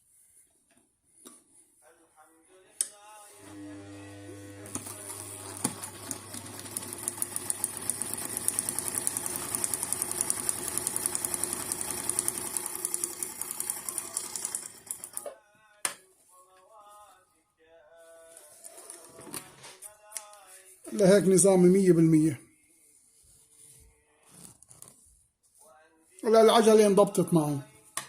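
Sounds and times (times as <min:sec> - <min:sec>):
sewing machine motor humming: 0:03.4 - 0:15.2.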